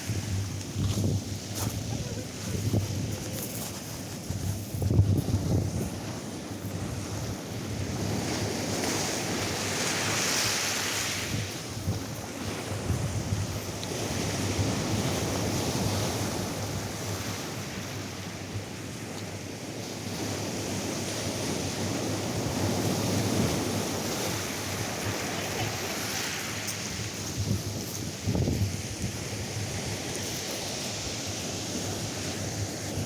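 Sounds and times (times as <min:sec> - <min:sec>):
surf breaking on beach: 0:00.0 - 0:17.6, 0:20.3 - 0:33.0
wind rumbling on microphone: 0:00.0 - 0:33.0.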